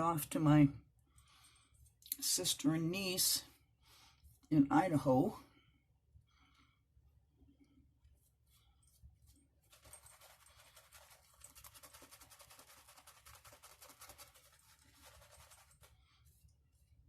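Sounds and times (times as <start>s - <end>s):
shaving brush swishing lather: 9.6s - 17.0s.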